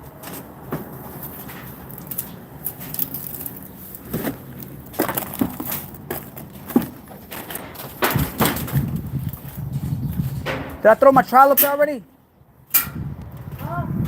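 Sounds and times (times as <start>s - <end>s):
knocks and scrapes of tools: 0.2s - 9.0s.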